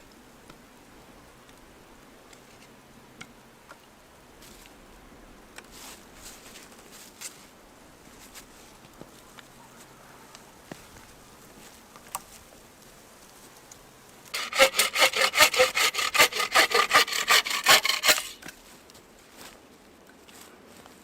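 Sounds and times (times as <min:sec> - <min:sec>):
hand saw cutting wood: 0:14.4 - 0:18.5.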